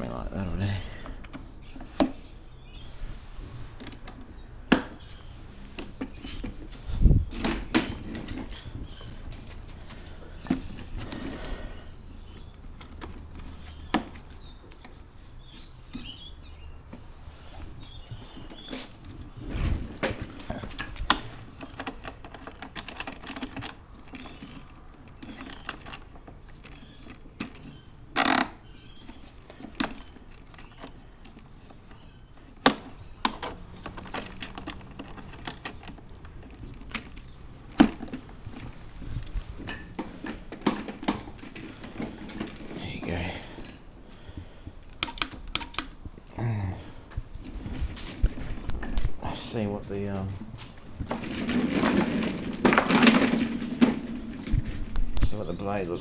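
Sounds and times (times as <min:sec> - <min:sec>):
parts clattering: 0:00.0 - 0:56.0
plastic and metal parts clicking: 0:18.2 - 0:42.8, 0:44.7 - 0:46.1.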